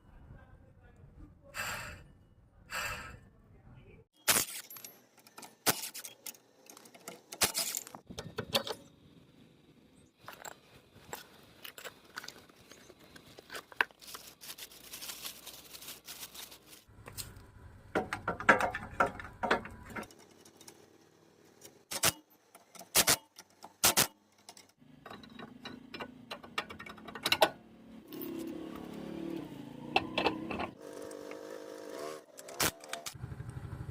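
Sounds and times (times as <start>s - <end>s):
metal tools clinking: 4.2s - 8.9s, 24.3s - 27.4s.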